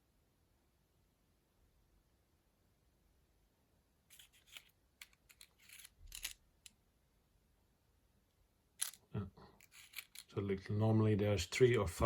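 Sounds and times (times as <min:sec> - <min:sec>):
light clicks and scrapes: 0:04.1 - 0:06.4, 0:09.6 - 0:10.4.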